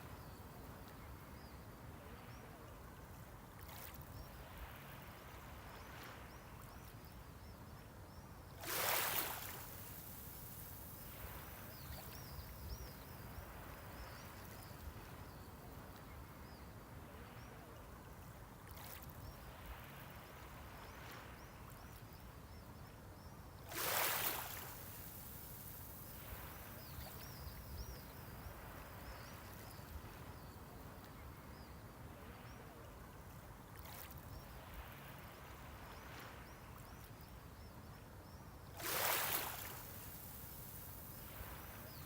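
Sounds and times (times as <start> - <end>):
small waves washing on shore: 8.6 - 16.1, 23.6 - 31.3, 38.7 - 42.0.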